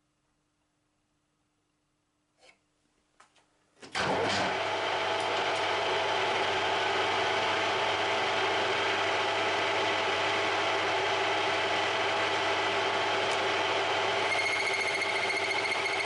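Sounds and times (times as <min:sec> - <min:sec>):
metal lathe running: 0:04.2 - 0:16.0
high-pitched whine: 0:14.2 - 0:16.0.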